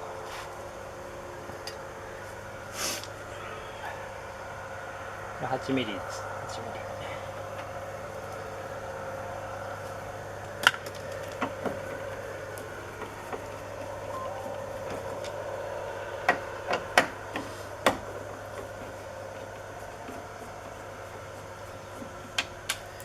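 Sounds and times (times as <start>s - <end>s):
steady hum: 11.7s - 23.0s.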